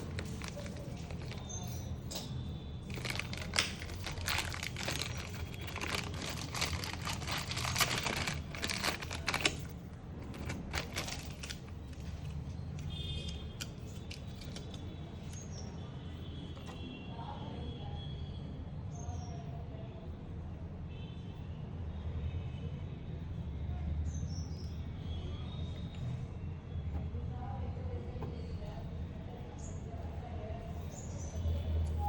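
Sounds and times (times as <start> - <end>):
rustling and clicking handling noises: 0.0 - 15.6.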